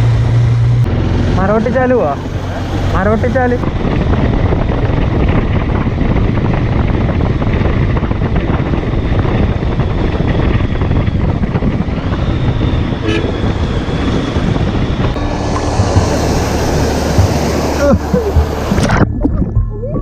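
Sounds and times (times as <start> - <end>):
motorcycle engine running: 0.0 - 20.0
riding wind rush: 0.0 - 20.0
brief pitched tone: 15.2 - 20.0.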